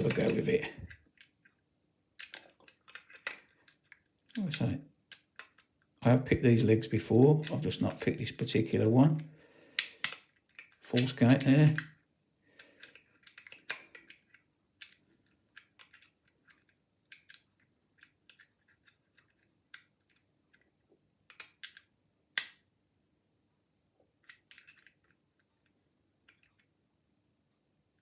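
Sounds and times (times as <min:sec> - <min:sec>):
lock pick clicking in lock: 0:02.2 - 0:03.5, 0:09.8 - 0:12.0.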